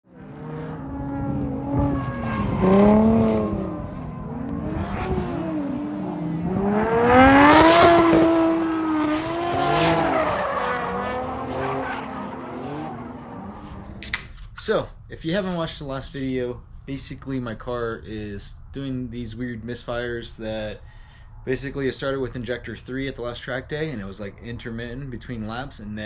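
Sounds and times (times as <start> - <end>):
car engines revving hard: 0.1 - 14.1.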